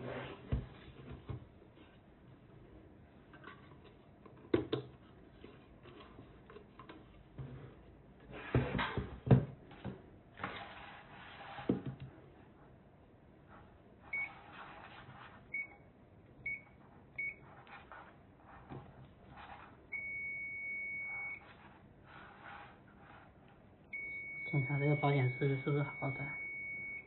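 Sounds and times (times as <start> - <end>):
knocks and rustling of handling: 0.0 - 12.8
multimeter continuity beeps: 19.9 - 21.4, 23.9 - 27.0.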